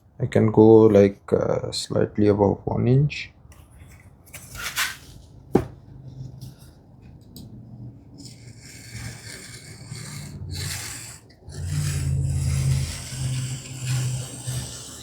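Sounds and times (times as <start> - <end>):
tape rubbed on wood: 8.3 - 15.0.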